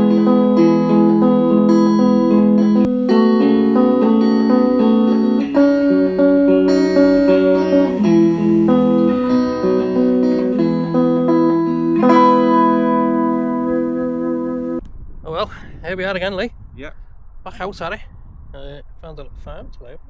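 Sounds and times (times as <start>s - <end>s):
guitar melody over chords: 0.0s - 14.8s.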